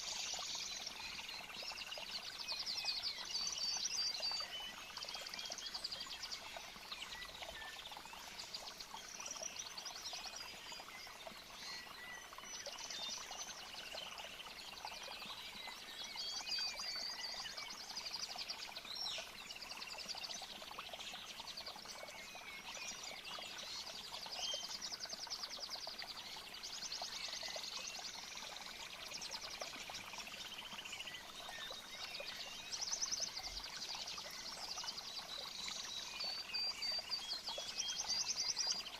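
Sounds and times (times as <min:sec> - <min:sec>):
stream of running water: 0:00.0 - 0:38.9.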